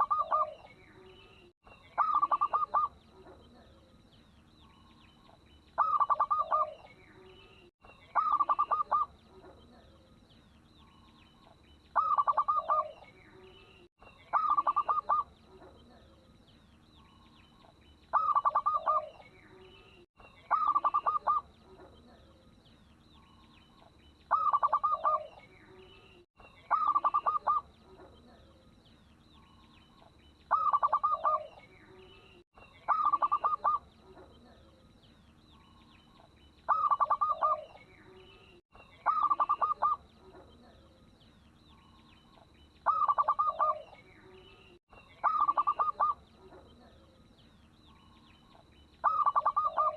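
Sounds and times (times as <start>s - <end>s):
dove cooing in pulsed phrases: 0.0s - 0.8s, 2.0s - 4.0s, 5.8s - 7.3s, 8.1s - 10.1s, 12.0s - 13.1s, 14.3s - 16.2s, 18.1s - 19.3s, 20.5s - 22.3s, 24.3s - 25.5s, 26.6s - 28.5s, 30.5s - 31.7s, 32.8s - 34.8s, 36.7s - 37.8s, 39.0s - 40.8s, 42.8s - 44.0s, 45.2s - 47.1s, 49.0s - 49.9s.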